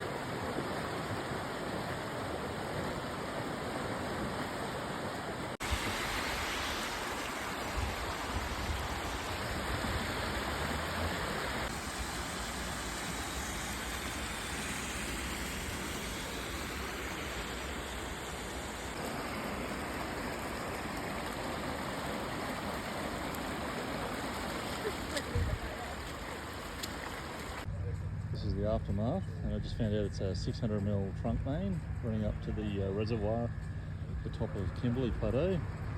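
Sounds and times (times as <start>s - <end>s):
water rushing from burst main: 0.0s - 27.7s.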